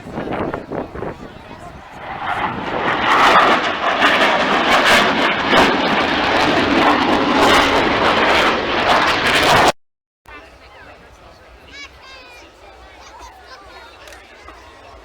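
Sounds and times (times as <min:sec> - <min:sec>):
jet engines in flight: 0:00.0 - 0:09.8.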